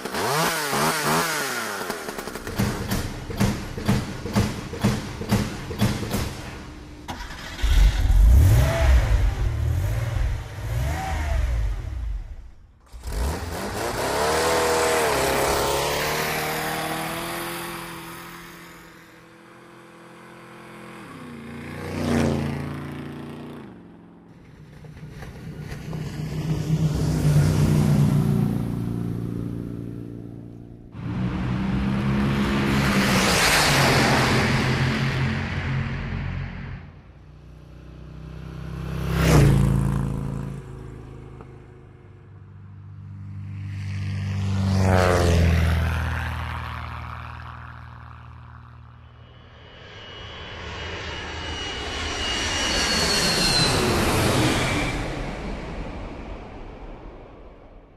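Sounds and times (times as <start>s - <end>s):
engines revving: 6.9s - 41.6s
vehicle passing close by: 43.0s - 50.3s.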